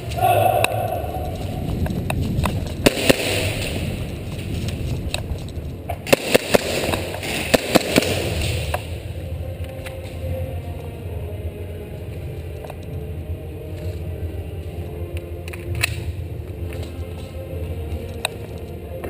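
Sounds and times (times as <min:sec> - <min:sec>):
steady rustling: 0:00.0 - 0:19.0
airsoft pistol shots: 0:02.8 - 0:03.9, 0:06.1 - 0:08.7.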